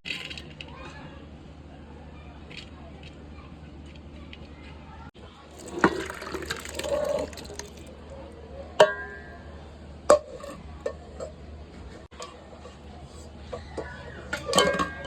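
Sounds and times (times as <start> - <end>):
liquid pouring into a pot: 5.5 - 8.0
utensil clinking against pot: 5.6 - 7.9.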